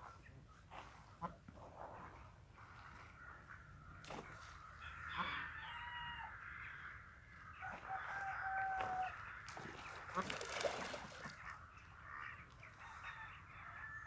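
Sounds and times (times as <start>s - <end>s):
rooster crowing: 5.2s - 6.3s, 7.8s - 9.2s.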